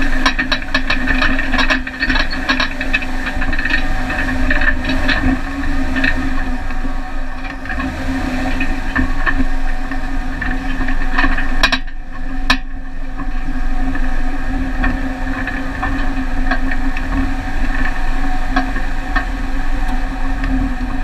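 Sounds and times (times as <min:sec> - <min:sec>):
knocks and rattles: 0:00.0 - 0:14.1
vehicle engine running: 0:00.0 - 0:21.0.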